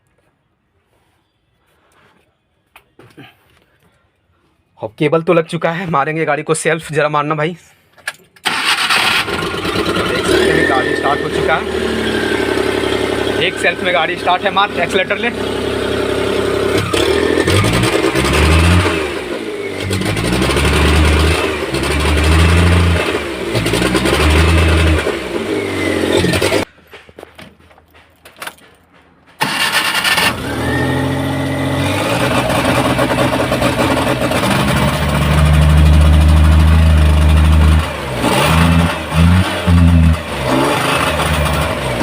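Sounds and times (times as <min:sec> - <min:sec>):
car engine revving: 0:08.5 - 0:26.7, 0:29.4 - 0:42.0.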